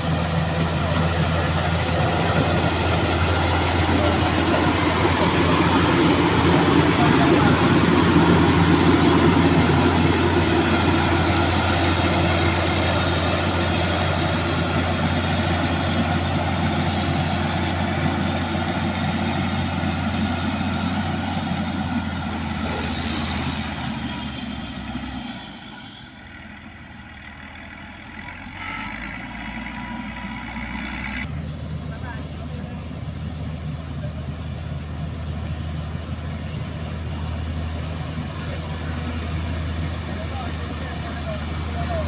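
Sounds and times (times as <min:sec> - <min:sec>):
heavy diesel engine running: 0:00.0 - 0:42.0.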